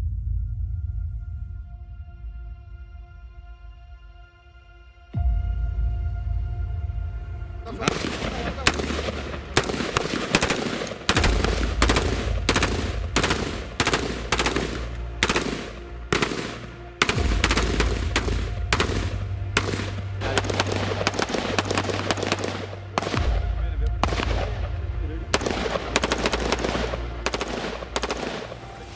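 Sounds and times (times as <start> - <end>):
rifle firing single shots: 7.8 - 28.9.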